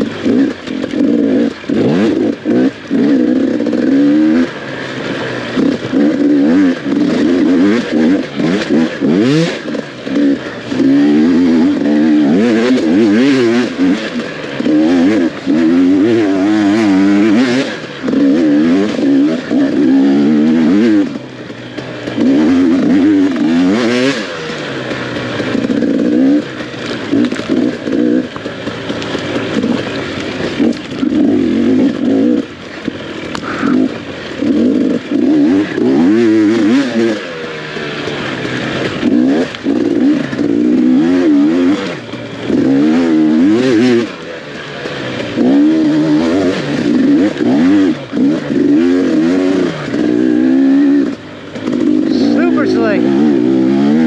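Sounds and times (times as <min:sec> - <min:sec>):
dirt bike engine revving: 0:00.0 - 0:54.0.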